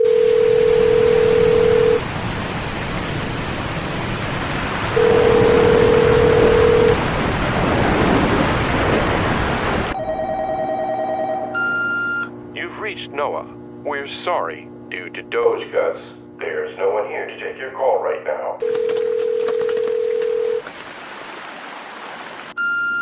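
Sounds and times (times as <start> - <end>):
steady telephone tones: 0.0 - 2.0, 5.0 - 7.0, 10.0 - 20.6
telephone ringing tone: 0.0 - 2.0, 5.0 - 7.0, 10.0 - 12.4, 18.6 - 20.6, 22.6 - 23.0
rush of wind and water: 1.4 - 10.0, 20.6 - 22.7.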